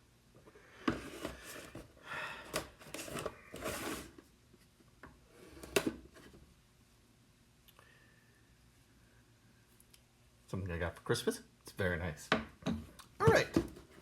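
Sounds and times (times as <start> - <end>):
cardboard box rustling and scraping: 2.9 - 4.2.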